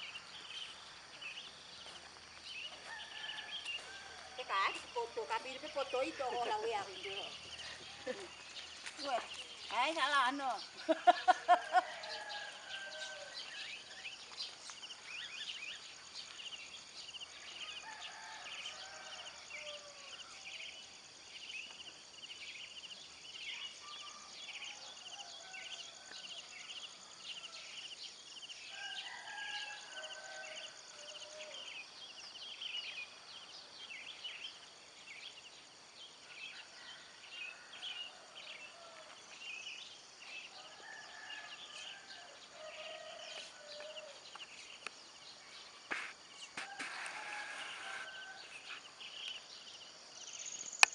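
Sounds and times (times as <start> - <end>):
small birds chirping: 0.0 - 28.0.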